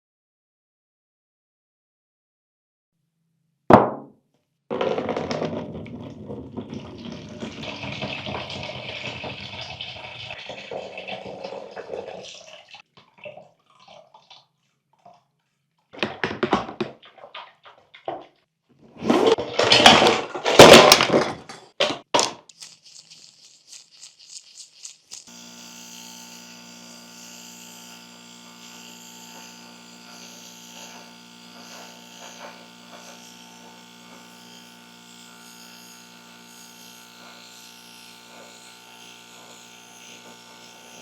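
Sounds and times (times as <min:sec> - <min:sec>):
small electric motor humming: 0:07.0 - 0:10.4, 0:22.4 - 0:41.0
scraping and cracking handling noises: 0:19.1 - 0:25.4.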